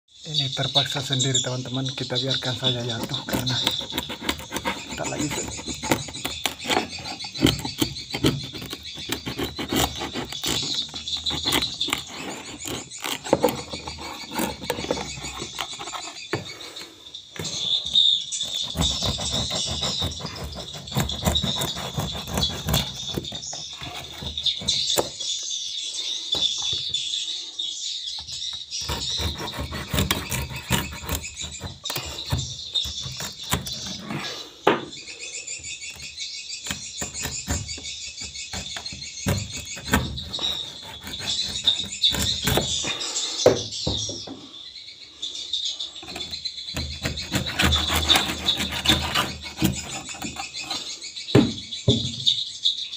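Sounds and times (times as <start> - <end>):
knocks: 34.7 - 35.0, 51.4 - 52.3.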